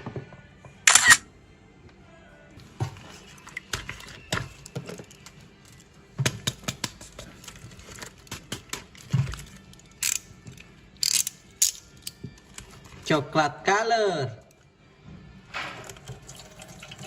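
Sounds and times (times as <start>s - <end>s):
plastic toys clicking and tapping: 3.6s - 12.8s
packaging crinkling: 7.2s - 9.9s.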